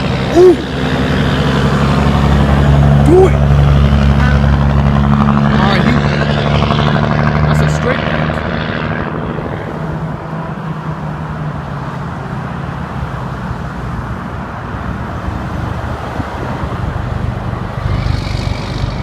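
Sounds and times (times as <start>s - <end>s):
truck engine droning: 0.0s - 10.7s, 15.2s - 19.0s
highway traffic: 0.0s - 19.0s
passing vehicles rushing: 0.0s - 19.0s.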